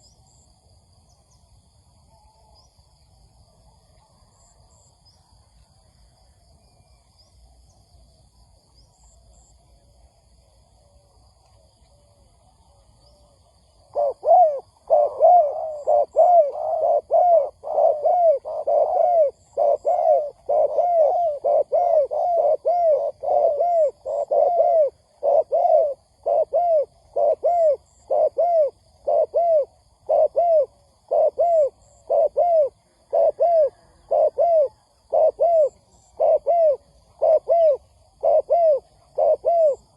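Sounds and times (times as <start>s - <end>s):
dove cooing: 11.9s - 39.9s.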